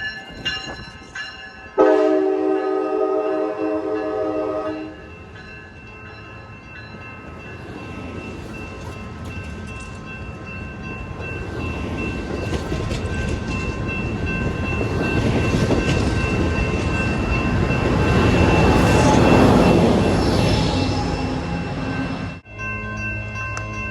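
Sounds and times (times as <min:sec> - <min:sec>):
train rumble and wheel noise: 0:00.0 - 0:23.9
train horn: 0:01.8 - 0:05.0.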